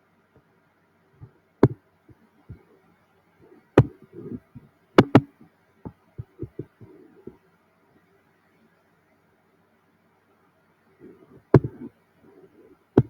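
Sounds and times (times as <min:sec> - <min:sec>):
keyboard taps: 0:03.8 - 0:04.4, 0:05.0 - 0:05.3, 0:11.6 - 0:11.9.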